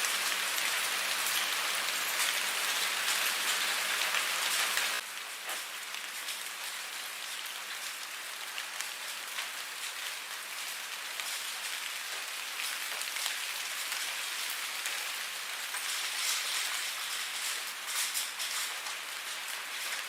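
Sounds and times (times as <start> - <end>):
steady rain falling: 0.0 - 20.0.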